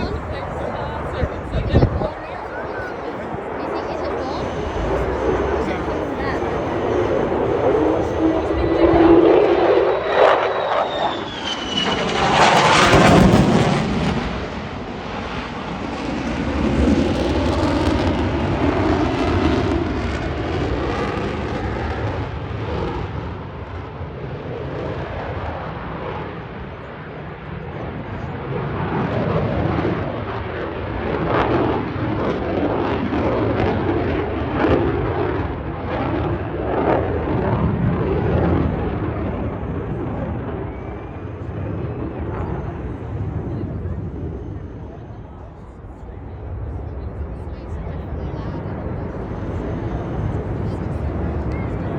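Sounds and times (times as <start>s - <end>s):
fighter jet passing overhead: 0.0s - 51.9s.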